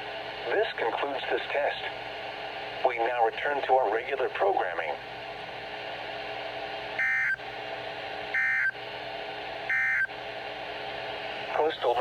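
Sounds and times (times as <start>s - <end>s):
radio hiss: 0.4s - 2.0s, 11.3s - 12.0s.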